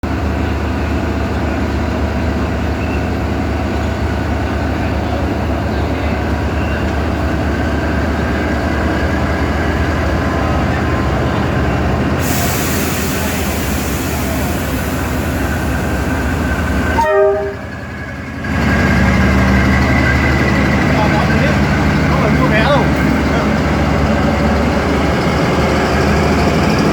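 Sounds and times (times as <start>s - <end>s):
diesel locomotive rumbling: 0.0s - 26.9s
short train horn toot: 16.9s - 17.8s.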